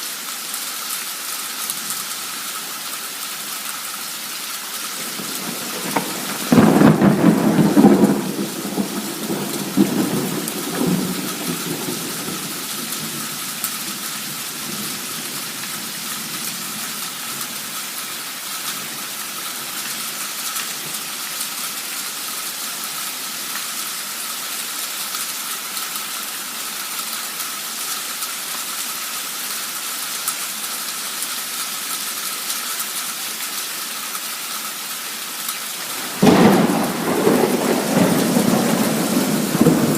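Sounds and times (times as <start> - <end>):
heavy rain hissing: 0.0 - 39.9
thunderclap rumbling: 5.0 - 13.4, 35.9 - 39.9.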